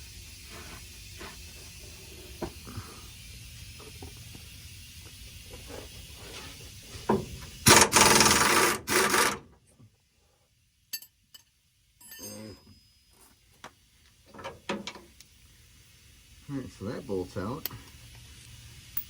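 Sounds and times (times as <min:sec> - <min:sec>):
pneumatic impact wrench hammering: 0:07.1 - 0:09.4
low hiss: 0:14.0 - 0:19.0.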